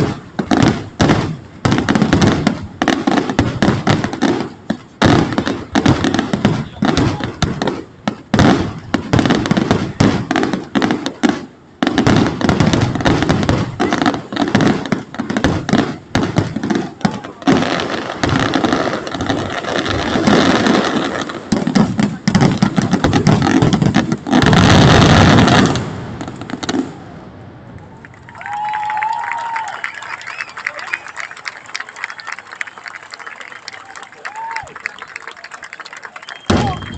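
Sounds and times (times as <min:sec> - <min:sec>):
fireworks bursting and crackling: 0:00.0 - 0:36.9.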